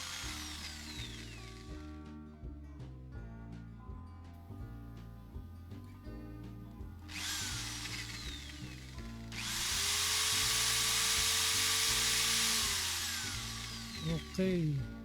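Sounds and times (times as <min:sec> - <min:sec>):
electric drill boring into wood: 0:00.0 - 0:02.0, 0:07.1 - 0:14.8.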